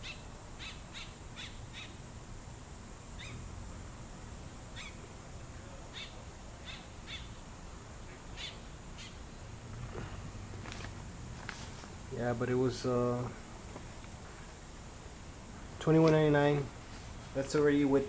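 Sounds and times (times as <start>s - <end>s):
small birds chirping: 0.0s - 2.0s, 3.2s - 3.5s, 4.7s - 5.1s, 5.8s - 7.4s, 8.0s - 10.3s.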